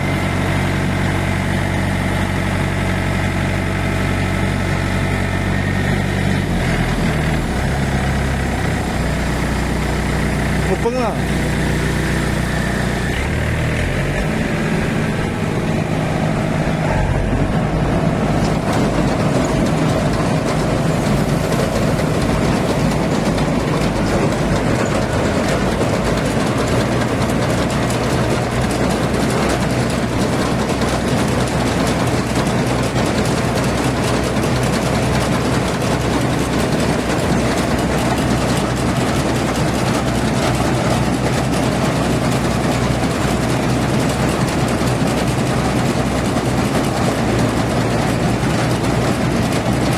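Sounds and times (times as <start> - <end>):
diesel engine running: 0.0 - 49.9.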